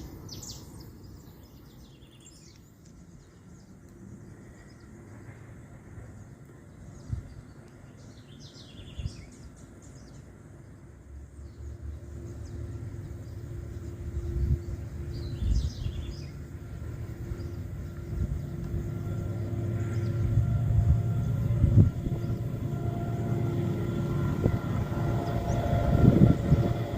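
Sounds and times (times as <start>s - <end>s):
birds chirping: 0.0s - 26.9s
diesel locomotive engine rumble: 0.0s - 26.9s
steady hum: 10.2s - 26.9s.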